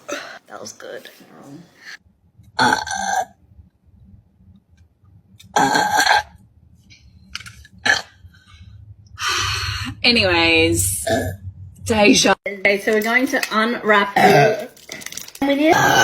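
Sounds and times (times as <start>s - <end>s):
woman burping loudly: 2.6s - 3.4s, 5.5s - 6.3s, 14.2s - 14.8s, 15.6s - 16.0s.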